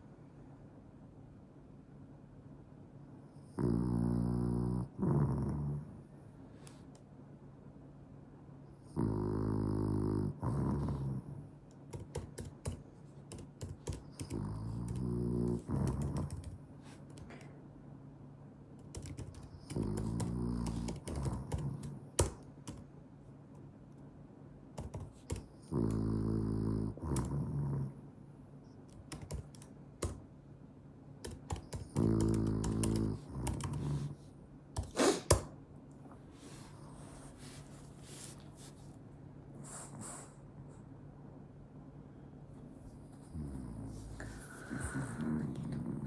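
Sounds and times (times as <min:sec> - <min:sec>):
dog snoring: 0:03.4 - 0:06.0, 0:08.8 - 0:11.5, 0:14.1 - 0:16.5, 0:19.6 - 0:22.0, 0:25.6 - 0:28.0, 0:31.7 - 0:34.2, 0:43.2 - 0:46.0.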